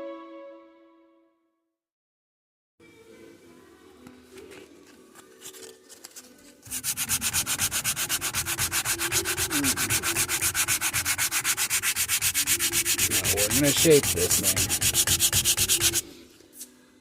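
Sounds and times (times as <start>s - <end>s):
rubbing and handling sounds: 4.2s - 16.7s
quick sanding strokes: 6.7s - 16.1s.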